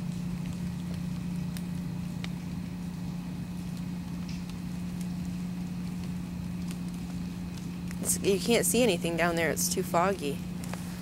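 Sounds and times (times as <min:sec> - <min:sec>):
low rumbling hum: 0:00.0 - 0:11.0.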